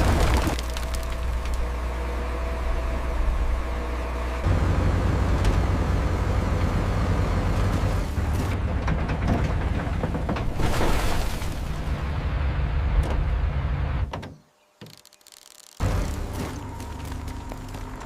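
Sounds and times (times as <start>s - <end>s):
heavy engine rumble: 0.0s - 10.9s, 15.8s - 18.0s.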